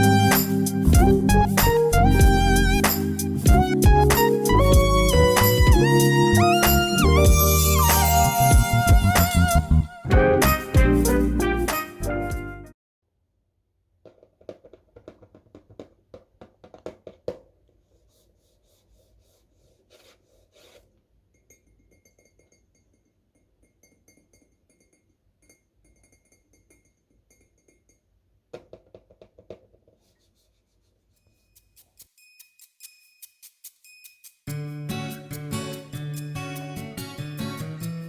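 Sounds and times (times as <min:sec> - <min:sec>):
rubbing and scratching of small things: 0:14.0 - 0:22.6, 0:28.6 - 0:34.6.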